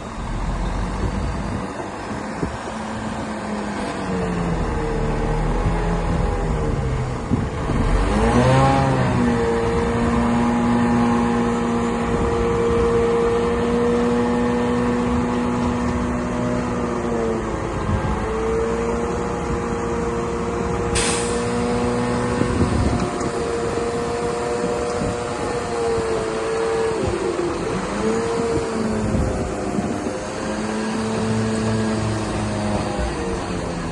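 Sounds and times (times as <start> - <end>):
bulldozer diesel engine: 0.0 - 33.9
brief hiss: 21.0 - 21.6.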